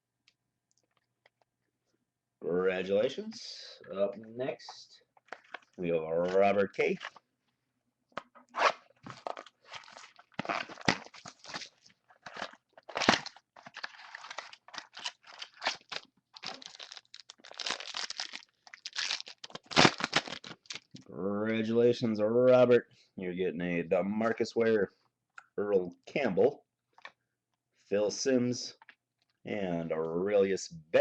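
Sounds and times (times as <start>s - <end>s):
card pack wrapper tearing and crinkling: 8.6s - 21.0s.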